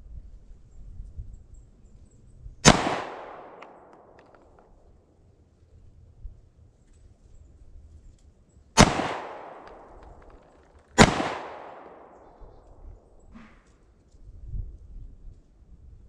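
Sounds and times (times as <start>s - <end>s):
pistol shots echoing: 2.6s - 4.6s, 8.8s - 10.4s, 11.0s - 12.8s.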